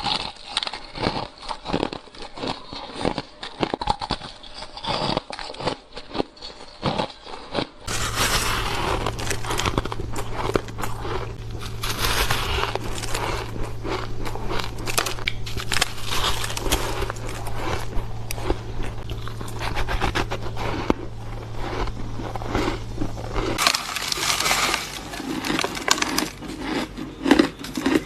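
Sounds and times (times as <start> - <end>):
chewing ice crunching: 0.0 - 28.0
steady low hum: 7.8 - 28.0.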